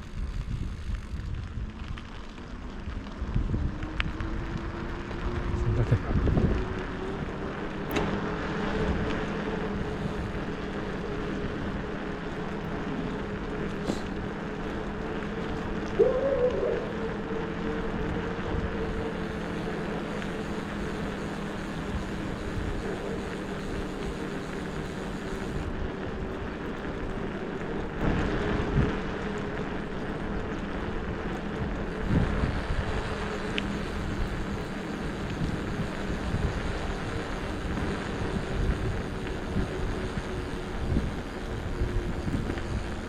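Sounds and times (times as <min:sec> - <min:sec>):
wind buffeting microphone: 0:00.0 - 0:02.2, 0:02.8 - 0:43.0
steady hum rising in pitch: 0:15.4 - 0:25.8.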